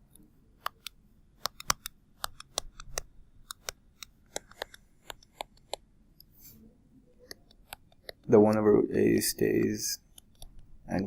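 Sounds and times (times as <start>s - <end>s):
sharp clicks and taps: 0.1s - 6.3s, 7.2s - 8.7s, 9.4s - 10.7s.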